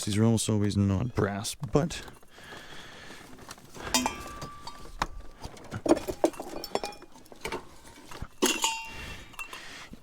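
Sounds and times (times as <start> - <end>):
metal and glass junk clinking: 3.4 - 10.0.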